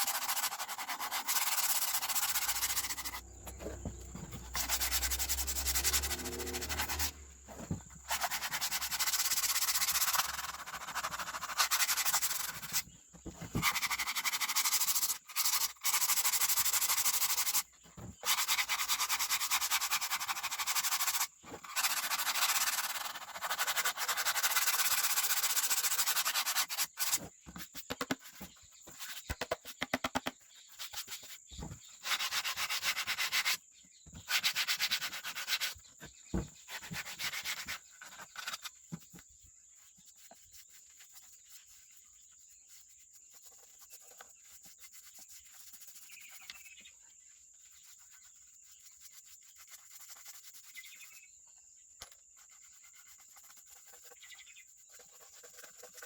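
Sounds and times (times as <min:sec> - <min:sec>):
hand sanding strokes: 0:00.0 - 0:12.9, 0:13.5 - 0:27.2, 0:32.0 - 0:33.6, 0:34.2 - 0:35.9, 0:36.6 - 0:38.8, 0:39.7 - 0:46.5, 0:47.6 - 0:51.0
high insect chirr: 0:00.0 - 0:27.3.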